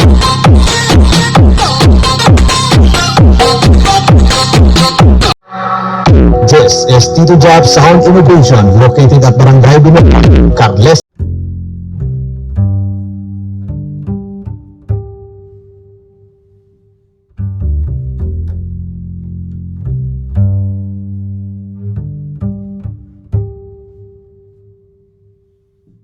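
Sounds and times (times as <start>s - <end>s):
bass-heavy music through speakers: 0.0s - 5.4s, 6.0s - 11.0s.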